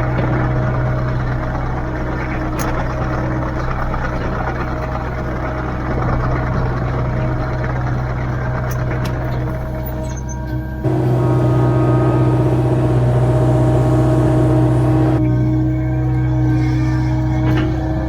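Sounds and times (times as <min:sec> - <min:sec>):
diesel engine running: 0:10.8 - 0:16.4.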